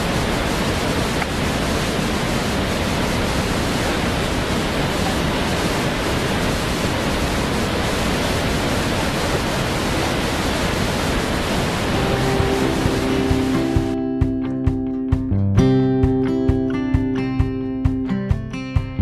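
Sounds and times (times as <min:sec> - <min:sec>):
waterfall rushing: 0:00.0 - 0:14.4
guitar music: 0:11.9 - 0:19.0.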